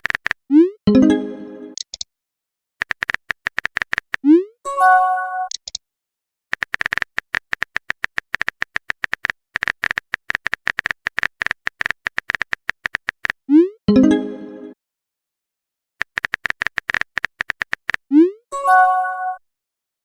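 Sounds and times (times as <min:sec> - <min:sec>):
keyboard tap clicks: 0:16.0 - 0:18.0.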